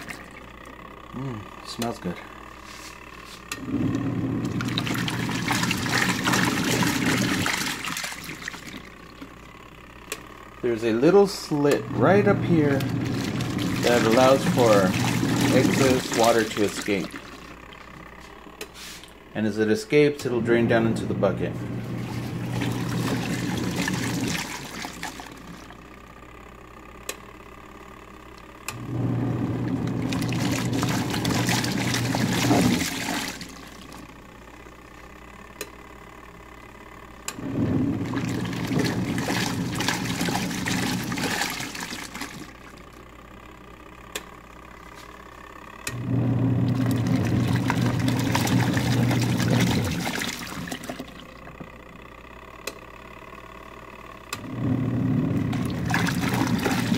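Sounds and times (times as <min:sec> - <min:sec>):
water churning: 0:00.0 - 0:00.8, 0:03.7 - 0:09.2, 0:12.0 - 0:17.9, 0:21.7 - 0:25.8, 0:29.0 - 0:34.1, 0:37.4 - 0:42.9, 0:46.1 - 0:51.5, 0:54.8 - 0:56.9
washing machine motor humming: 0:00.0 - 0:56.9.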